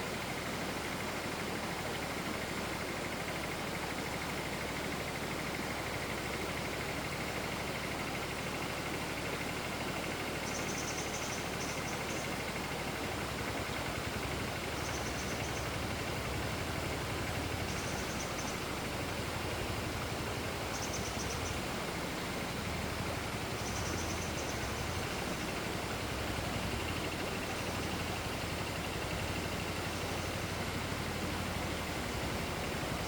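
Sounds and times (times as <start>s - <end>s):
forest stream flowing: 0.0s - 33.0s.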